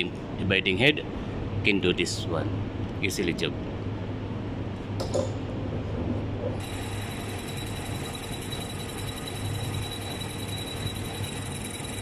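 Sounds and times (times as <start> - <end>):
milling machine humming: 6.6 - 12.0.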